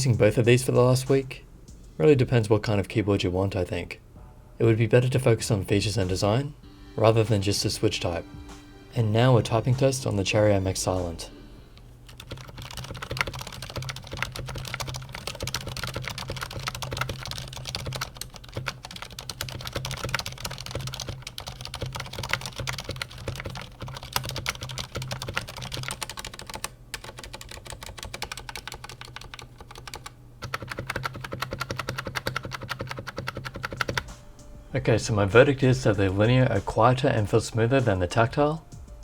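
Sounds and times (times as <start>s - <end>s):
quiet keyboard typing: 11.8s - 34.2s.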